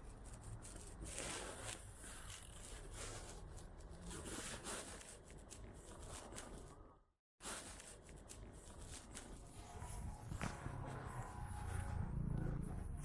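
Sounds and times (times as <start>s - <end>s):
steady low rumble: 9.6s - 13.0s
footsteps scuffing and rustling: 9.7s - 12.1s.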